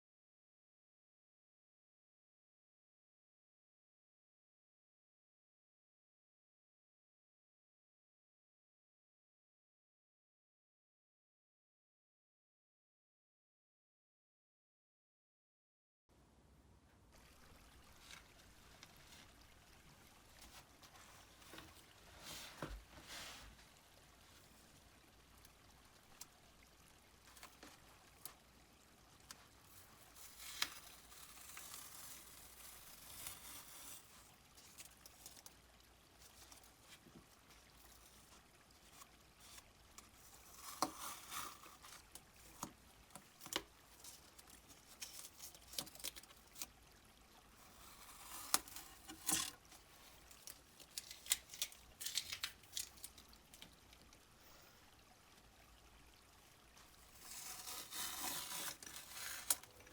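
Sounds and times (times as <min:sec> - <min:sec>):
soft watery squishes: 0:17.1 - 0:59.9.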